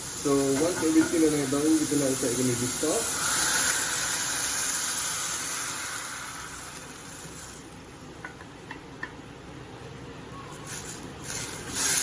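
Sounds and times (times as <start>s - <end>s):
liquid sizzling in a hot pan: 0.0s - 8.4s, 10.7s - 12.0s.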